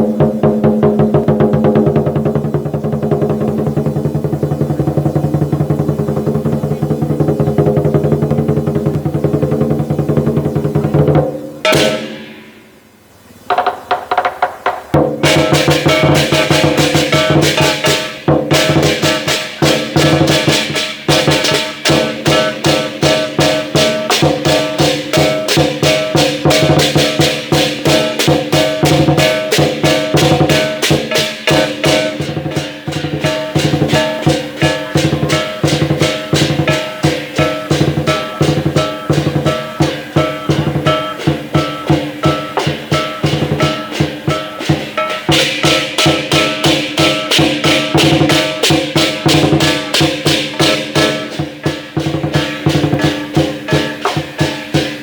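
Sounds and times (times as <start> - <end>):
drum beaten rapidly: 0.0 - 12.6, 13.5 - 55.0
cymbals clashing: 0.0 - 12.9, 13.6 - 55.0
gongs ringing: 15.2 - 55.0.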